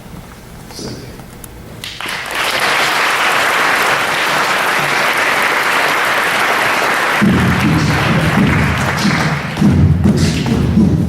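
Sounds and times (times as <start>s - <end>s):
audience applauding: 1.8s - 10.8s
low thudding: 7.2s - 11.0s.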